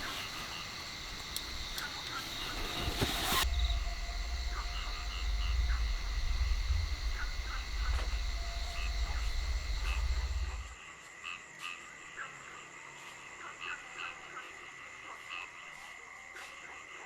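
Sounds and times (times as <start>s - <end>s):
high trill of frogs and insects: 0.0s - 10.9s
low rumble: 0.8s - 10.8s.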